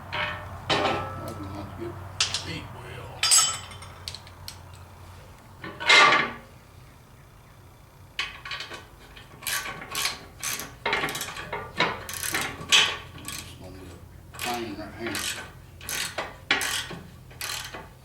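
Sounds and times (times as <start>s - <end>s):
ratchet wrench clicking: 12.1s - 13.6s, 14.3s - 17.8s.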